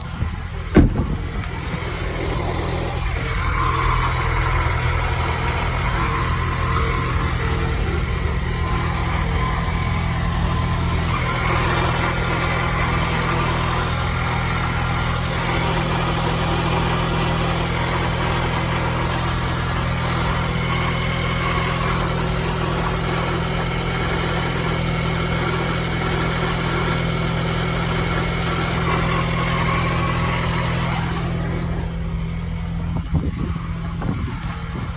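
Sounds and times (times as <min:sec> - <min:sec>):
drivetrain grinding noise: 0:00.0 - 0:24.8, 0:25.5 - 0:34.9
car engine running: 0:00.0 - 0:34.9.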